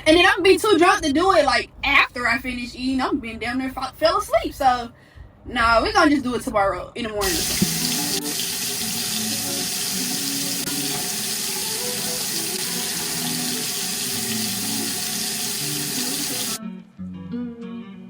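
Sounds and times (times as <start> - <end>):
background music: 5.4 - 18.0
tap water running into sink: 7.2 - 16.6.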